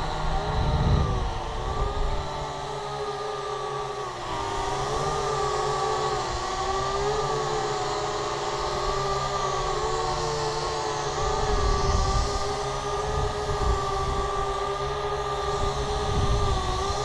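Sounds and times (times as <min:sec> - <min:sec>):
quadcopter motors whining: 0:00.0 - 0:17.0
low rumble: 0:00.3 - 0:02.2.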